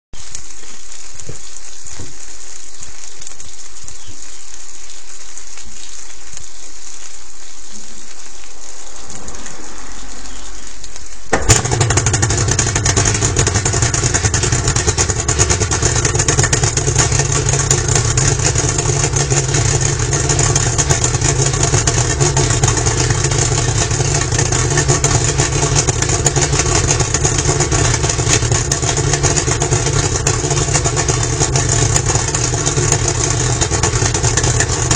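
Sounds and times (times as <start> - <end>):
water hissing through hose: 4.6 - 34.9
outboard motor idling: 11.3 - 34.9.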